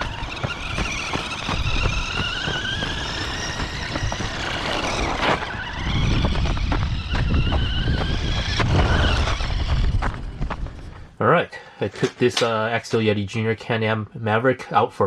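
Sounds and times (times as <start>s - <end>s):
rc car motor whining: 0.0s - 11.0s.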